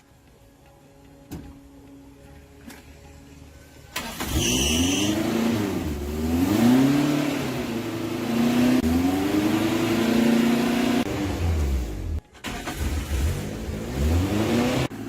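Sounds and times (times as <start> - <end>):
truck engine revving: 4.0 - 15.0.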